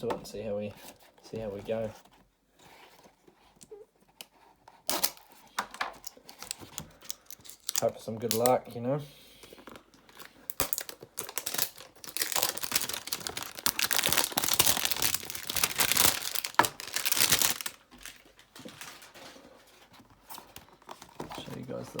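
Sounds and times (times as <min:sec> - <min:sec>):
plastic wrapper crinkling: 0:06.0 - 0:08.6, 0:09.6 - 0:19.6
cardboard box tearing: 0:11.4 - 0:17.8.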